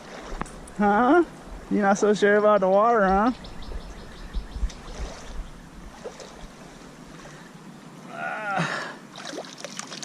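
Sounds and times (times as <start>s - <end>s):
creek water running: 0.0s - 10.0s
water splash: 9.1s - 10.0s.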